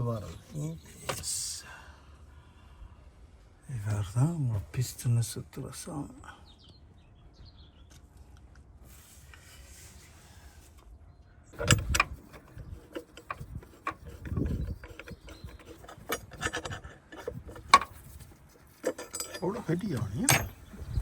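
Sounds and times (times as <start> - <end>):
metal tools clinking: 11.6 - 20.9.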